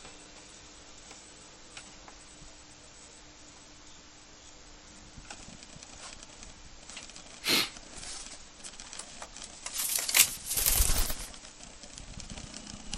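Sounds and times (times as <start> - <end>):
bird clicks and scratches: 5.2 - 12.9
rustling and clicking: 5.2 - 12.9.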